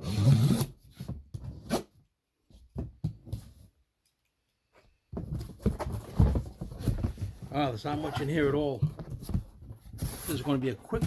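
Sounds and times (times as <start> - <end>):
cardboard box rustling and knocks: 5.1 - 10.3.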